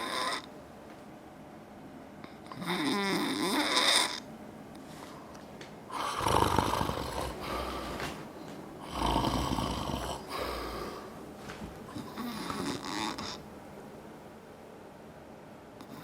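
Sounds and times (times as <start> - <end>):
man snoring loudly: 0.0 - 0.5, 2.6 - 4.2, 5.9 - 8.0, 8.8 - 10.8, 12.0 - 13.4.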